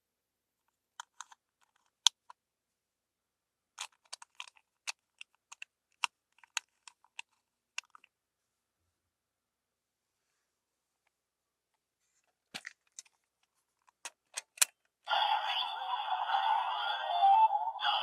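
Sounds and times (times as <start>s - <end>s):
plastic toy parts clicking: 1.0s - 2.4s, 3.8s - 8.1s, 13.8s - 14.9s.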